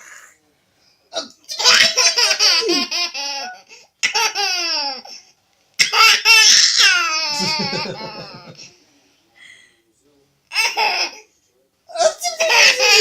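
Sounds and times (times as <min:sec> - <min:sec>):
small child giggling: 0:07.1 - 0:08.6.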